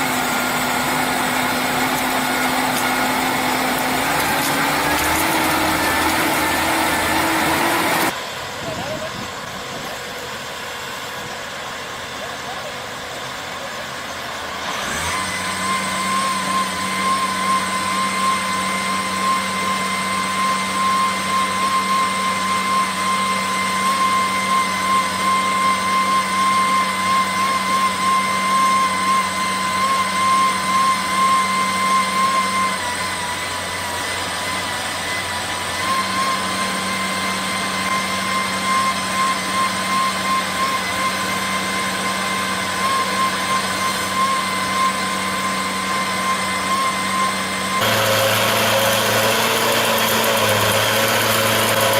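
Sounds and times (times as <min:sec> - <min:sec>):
chainsaw engine revving: 0:00.0 - 0:08.2, 0:14.5 - 0:21.5, 0:35.6 - 0:51.9.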